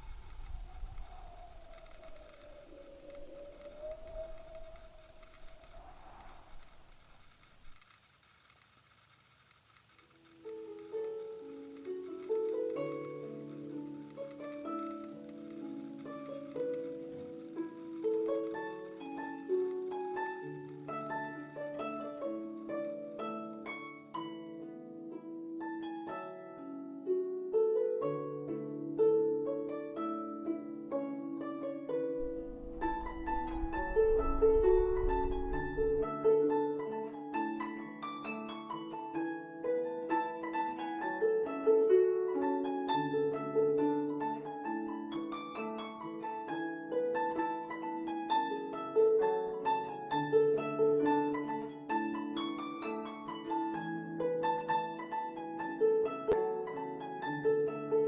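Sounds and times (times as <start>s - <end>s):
low rumble: 0.0s - 7.8s, 32.2s - 36.2s
plucked-string melody: 10.4s - 58.0s.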